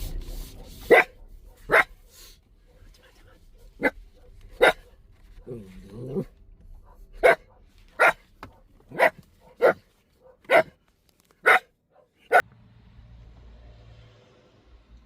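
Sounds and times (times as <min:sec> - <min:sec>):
dog barking: 0:00.1 - 0:10.8, 0:11.4 - 0:12.4.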